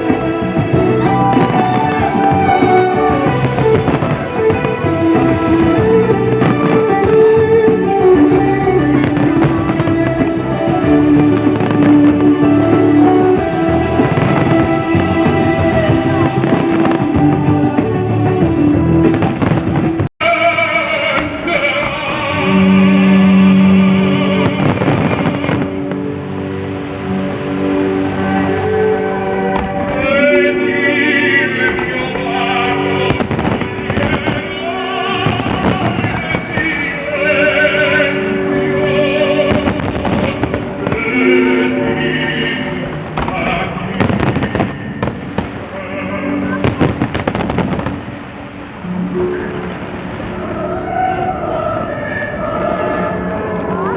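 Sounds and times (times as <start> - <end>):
fireworks bursting and crackling: 0.0 - 20.1, 24.3 - 26.2, 31.7 - 38.0, 39.4 - 41.5, 42.8 - 50.5
music with long held notes: 0.0 - 53.9.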